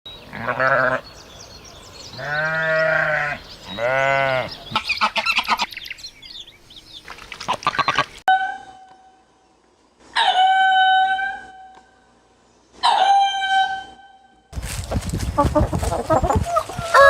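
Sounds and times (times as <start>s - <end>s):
small birds chirping: 0.1s - 8.2s
animal bleating: 0.3s - 1.0s, 2.2s - 5.5s.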